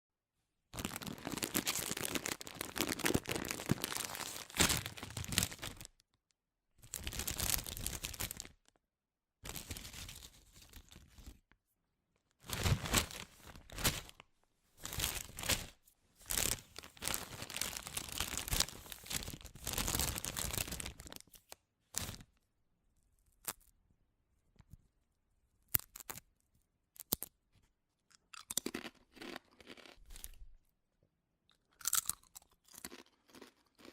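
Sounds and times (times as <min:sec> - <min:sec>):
chip bag crinkling: 0:00.8 - 0:06.0, 0:06.8 - 0:08.7, 0:09.5 - 0:11.4, 0:12.4 - 0:14.2, 0:14.8 - 0:21.4, 0:28.4 - 0:30.4.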